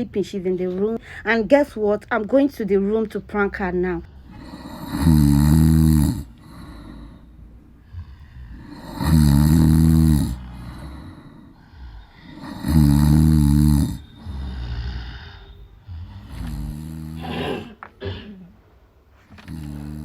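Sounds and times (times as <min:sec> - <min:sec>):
woman snoring: 0:04.0 - 0:17.9, 0:19.3 - 0:20.0.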